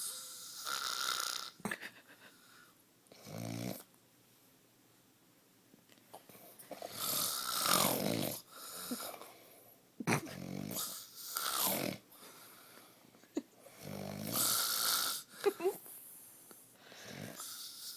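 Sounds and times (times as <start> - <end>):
man snoring: 0.0 - 1.6, 6.9 - 8.4, 10.1 - 12.0, 13.7 - 15.3
quiet breathing: 2.2 - 2.9, 8.4 - 9.9, 12.0 - 17.9.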